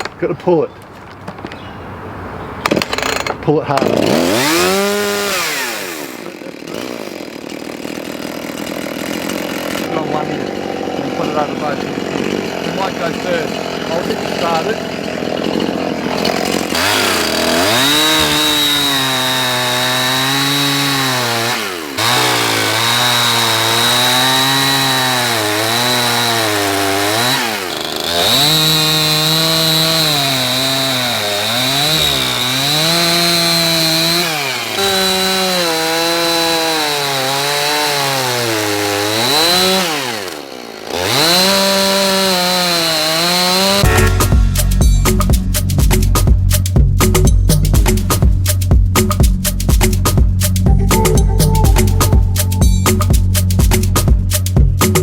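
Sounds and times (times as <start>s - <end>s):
chainsaw engine revving: 2.7s - 44.9s.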